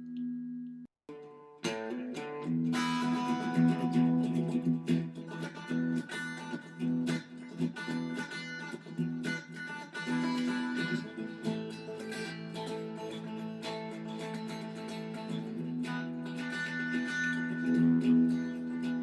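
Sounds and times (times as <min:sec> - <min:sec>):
guitar music: 0:01.1 - 0:19.0.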